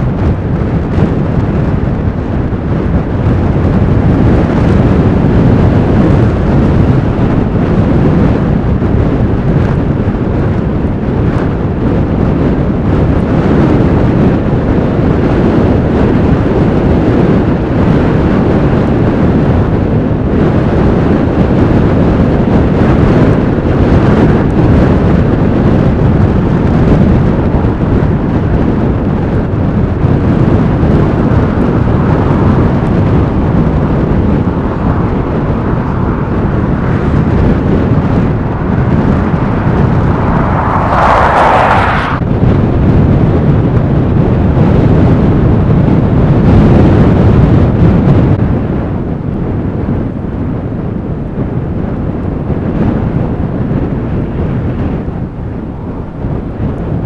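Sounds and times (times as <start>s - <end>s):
blizzard wind on microphone: 0.0s - 57.0s.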